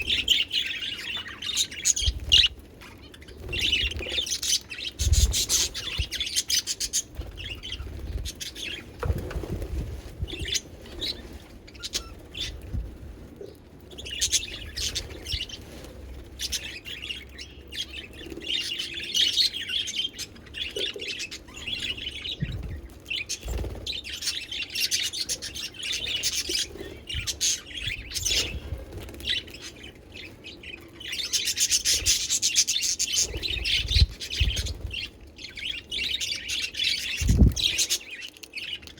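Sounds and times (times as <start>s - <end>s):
budgerigars chirping: 10.4s - 12.6s.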